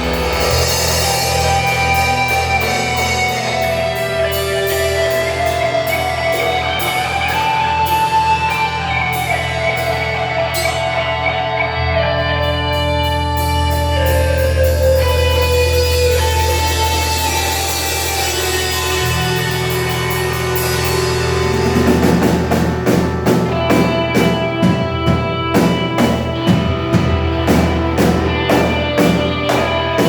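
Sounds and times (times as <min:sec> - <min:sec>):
rock music with lead guitar: 0:00.0 - 0:30.0.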